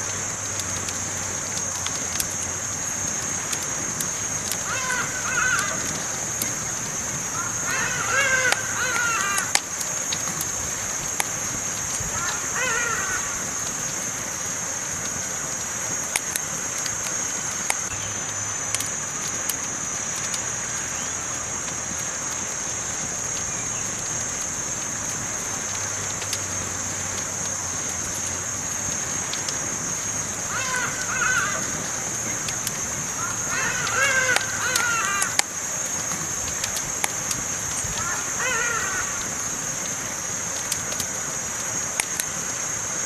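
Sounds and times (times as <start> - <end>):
campfire crackling: 0.0 - 43.0
crow cawing: 4.6 - 6.0, 7.3 - 9.6, 12.1 - 13.5, 30.5 - 31.9, 33.1 - 35.5, 37.9 - 39.3.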